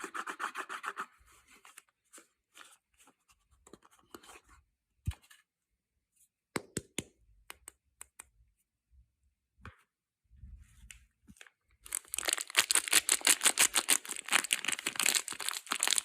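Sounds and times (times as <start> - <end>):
soap and packaging being handled: 11.2 - 16.0.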